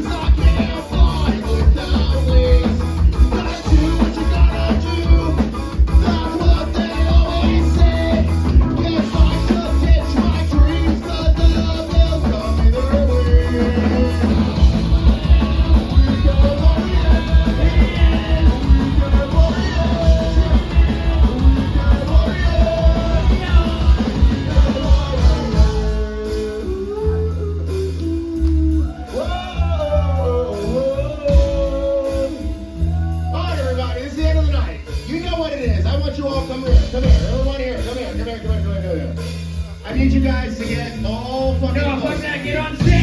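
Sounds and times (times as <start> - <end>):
person singing: 0.0 - 33.6, 39.7 - 43.0
punk band playing live: 0.0 - 43.0.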